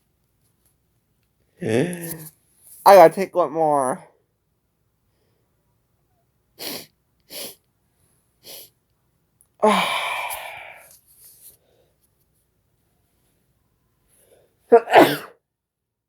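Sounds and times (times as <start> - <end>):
sharp sniffs: 6.6 - 7.6, 8.4 - 8.7
person sneezing: 9.6 - 10.8, 14.7 - 15.4.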